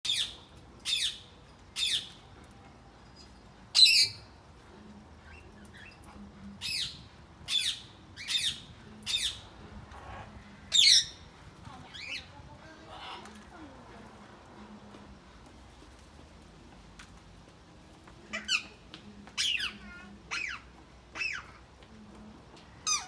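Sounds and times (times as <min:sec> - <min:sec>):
parrots squawking: 0:03.8 - 0:04.2, 0:06.6 - 0:09.4, 0:10.0 - 0:11.2, 0:12.0 - 0:13.5, 0:19.4 - 0:21.6.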